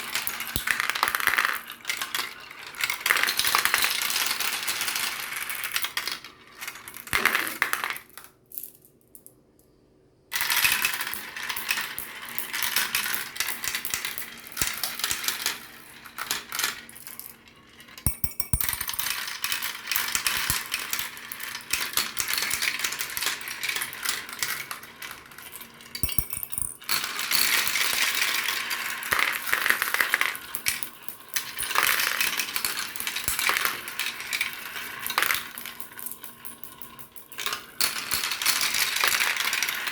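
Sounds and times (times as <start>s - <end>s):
marbles clattering down a track: 0.0s - 8.3s, 10.3s - 39.9s.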